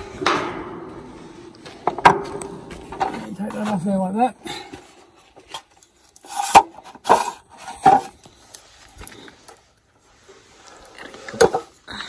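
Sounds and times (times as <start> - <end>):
metal parts clunking and rattling: 0.0 - 3.8.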